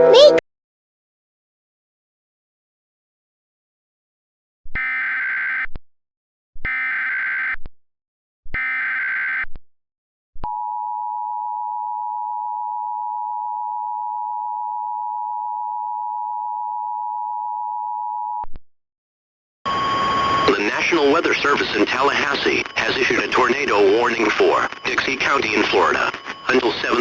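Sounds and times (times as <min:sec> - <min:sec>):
digital data bursts: 0:19.7 - 0:27.0
two-tone attention signal: 0:19.7 - 0:27.0.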